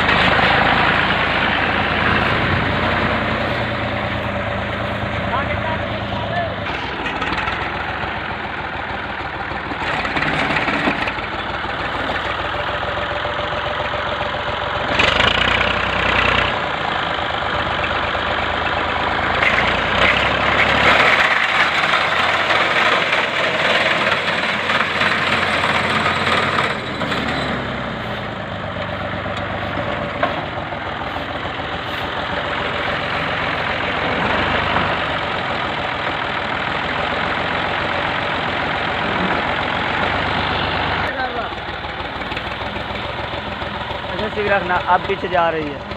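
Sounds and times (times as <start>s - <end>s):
tractor engine running: 0.0s - 45.9s.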